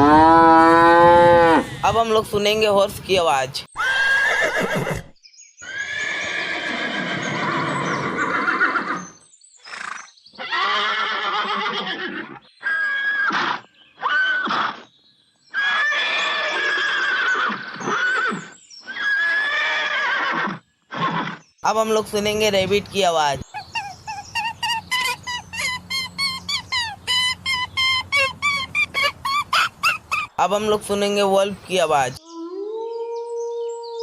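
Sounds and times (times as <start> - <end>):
horse neighing: 3.8 - 9.1, 9.7 - 14.8, 15.6 - 21.4, 23.4 - 30.3.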